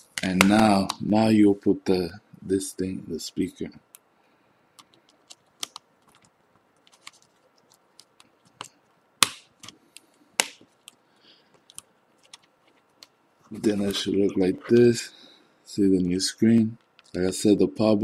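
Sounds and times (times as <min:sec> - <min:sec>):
plastic snaps: 0:08.0 - 0:11.0.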